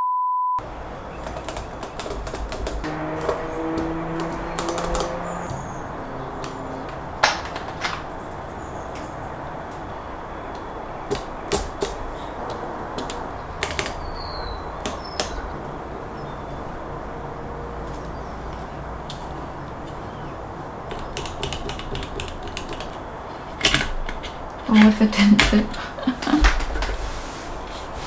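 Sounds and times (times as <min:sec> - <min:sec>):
mechanical keyboard keycaps clicking: 0:00.6 - 0:15.5, 0:20.8 - 0:26.9.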